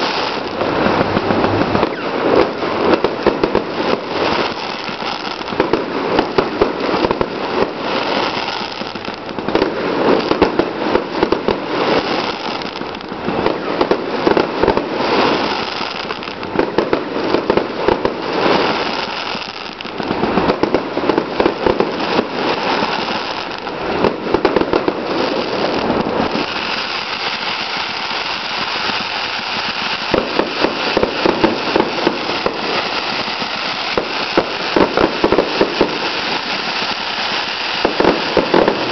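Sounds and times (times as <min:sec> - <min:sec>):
fireworks bangs and crackling: 0:00.0 - 0:38.9.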